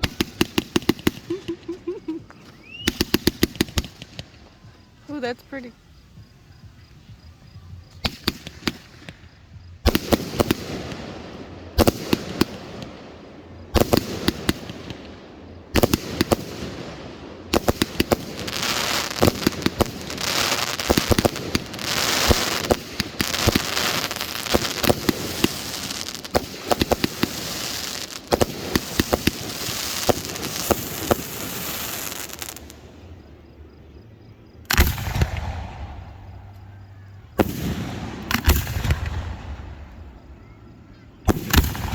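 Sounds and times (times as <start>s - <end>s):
firework bangs: 0.0s - 5.3s, 8.0s - 33.0s, 34.7s - 40.4s, 41.2s - 41.9s
fireworks crackling and popping: 0.0s - 33.2s, 34.6s - 36.7s, 37.4s - 40.4s, 41.2s - 41.9s.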